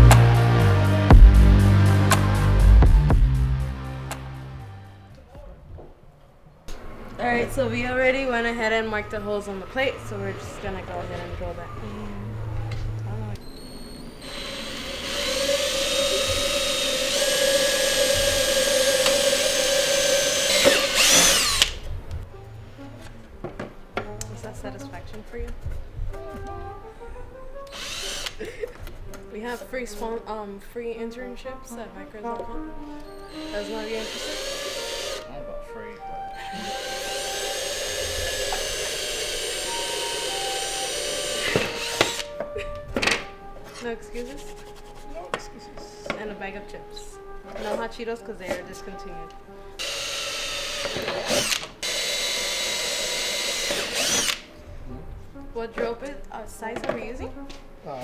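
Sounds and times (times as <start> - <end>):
power drill whining: 6.7 - 22.2, 27.6 - 29.3, 32.7 - 44.0, 48.5 - 54.7.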